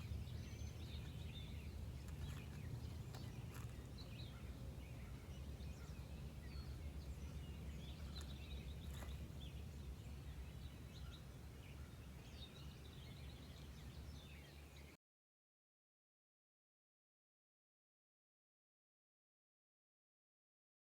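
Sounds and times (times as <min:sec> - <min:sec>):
small birds chirping and twittering: 0:00.0 - 0:15.0.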